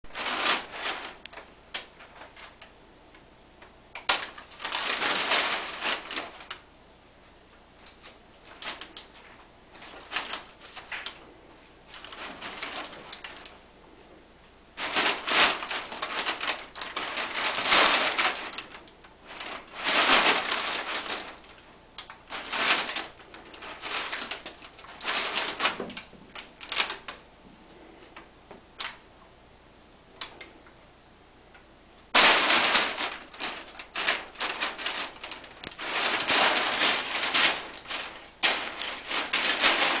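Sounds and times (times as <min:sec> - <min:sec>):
packing paper crinkling: 0:00.1 - 0:02.7, 0:04.0 - 0:06.7, 0:07.8 - 0:13.6, 0:14.8 - 0:27.2, 0:32.2 - 0:40.0.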